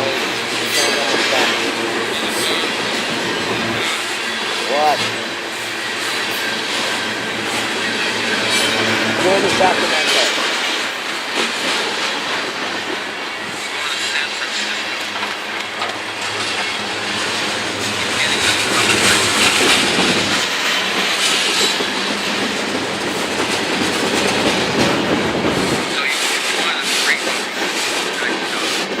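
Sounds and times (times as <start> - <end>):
clickety-clack over rail joints: 0.0 - 29.0
freight train wheels on rail: 0.0 - 29.0
low train rumble: 0.0 - 29.0.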